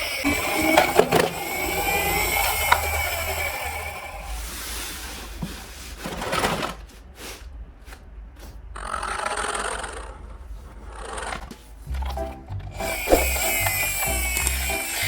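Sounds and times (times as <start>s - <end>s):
toy cars rolling and scraping: 0.0s - 7.0s, 12.8s - 15.0s.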